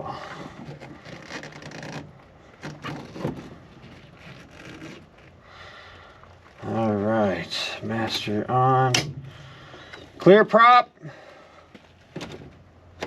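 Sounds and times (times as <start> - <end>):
rubbing and rustling: 0.2 - 6.9.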